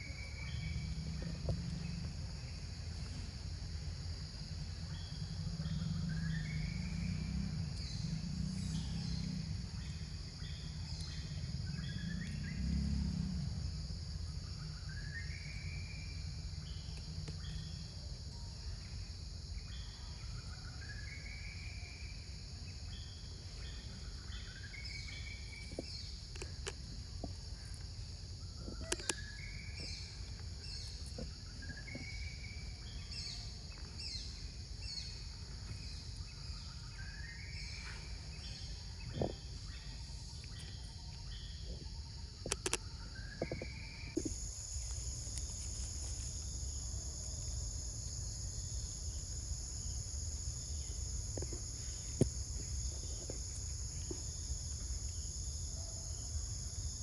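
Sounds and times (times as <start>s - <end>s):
insects droning: 0.0s - 57.0s
sharp clicks: 42.4s - 42.9s.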